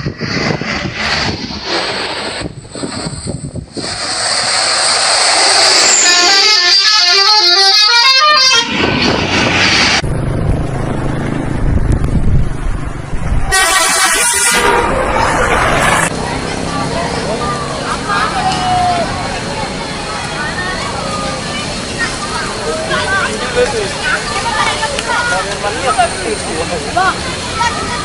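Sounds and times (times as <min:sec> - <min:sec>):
low engine rumble: 0:00.0 - 0:06.0, 0:08.8 - 0:28.0
musical bus horn: 0:05.9 - 0:09.2, 0:13.5 - 0:15.0.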